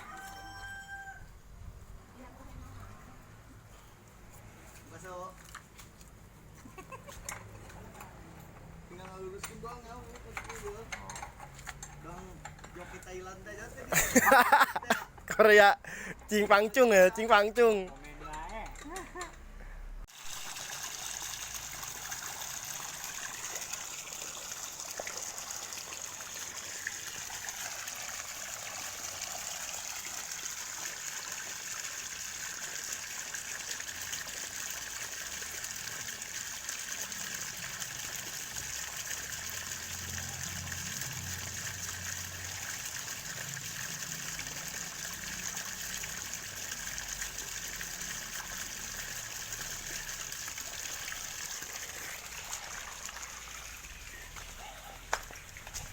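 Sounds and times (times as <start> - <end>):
water pouring from pipe: 20.1 - 55.9.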